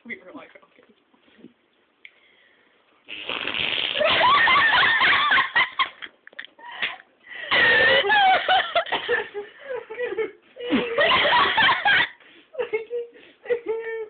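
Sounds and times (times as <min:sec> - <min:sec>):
person making fake fart noises: 0:03.0 - 0:04.4.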